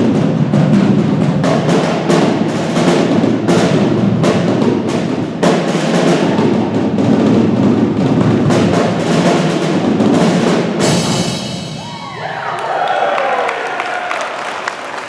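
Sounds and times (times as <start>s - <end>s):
percussion ensemble drumming: 0.0s - 12.6s.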